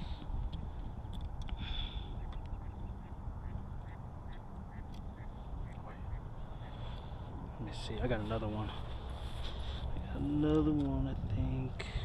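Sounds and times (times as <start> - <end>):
wind rumble on microphone: 0.0 - 12.0
quacking calls: 2.2 - 7.1.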